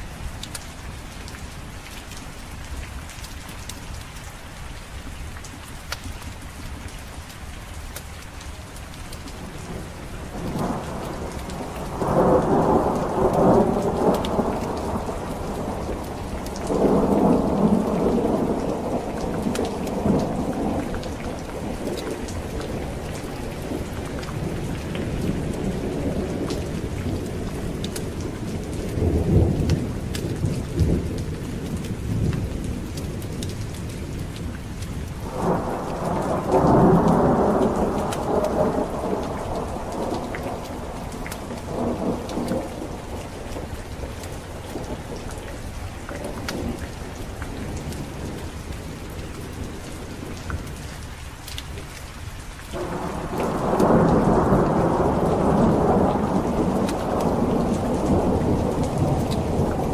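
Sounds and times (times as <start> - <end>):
heavy rain: 0.0 - 59.9
thunder rumbling: 9.4 - 34.2, 35.2 - 50.7, 52.8 - 59.9.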